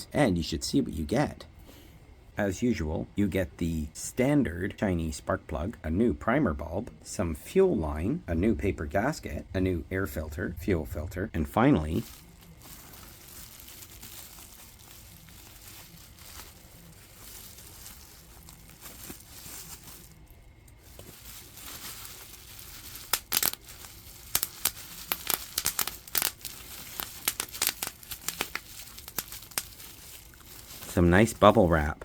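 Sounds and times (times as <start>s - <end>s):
bubble wrap crinkling: 8.4s - 32.0s
bubble wrap crackles and clicks: 11.8s - 32.0s.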